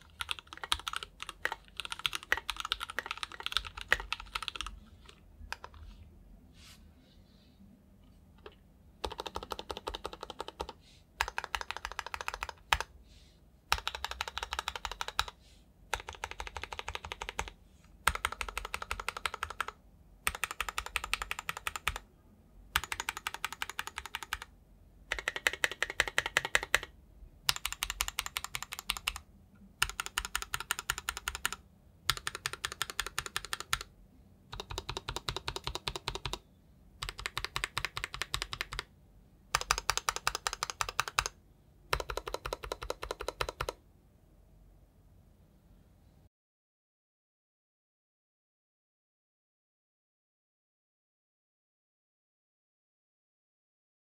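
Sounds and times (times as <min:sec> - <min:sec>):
mechanical keyboard typing: 0:00.0 - 0:05.8, 0:08.4 - 0:12.9, 0:13.7 - 0:22.0, 0:22.8 - 0:24.5, 0:25.1 - 0:26.9, 0:27.5 - 0:29.2, 0:29.8 - 0:33.9, 0:34.5 - 0:36.4, 0:37.0 - 0:38.9, 0:39.5 - 0:43.8.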